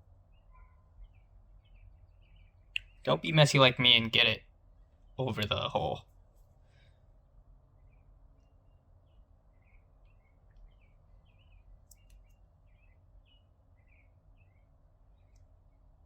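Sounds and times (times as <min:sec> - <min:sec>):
faint bird chirping: 0:00.0 - 0:16.0
faint clicks: 0:11.8 - 0:12.4.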